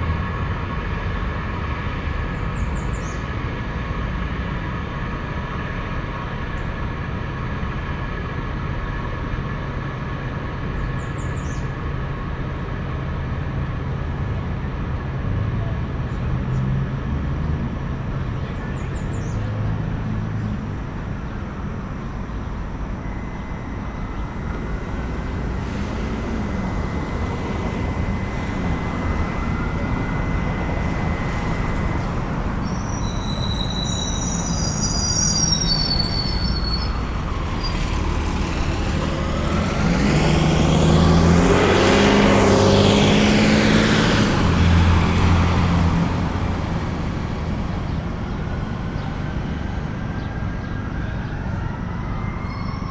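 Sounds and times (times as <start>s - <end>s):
road traffic passing: 0.0s - 52.9s
heavy vehicle accelerating: 10.0s - 52.4s
high brake squeal: 18.0s - 46.6s, 50.2s - 52.9s.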